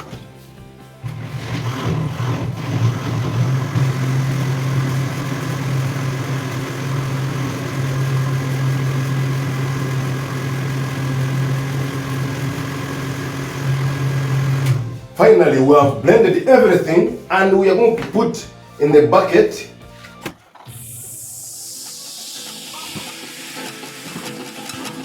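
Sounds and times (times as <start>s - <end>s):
blender running: 1.0s - 15.2s, 20.7s - 25.0s.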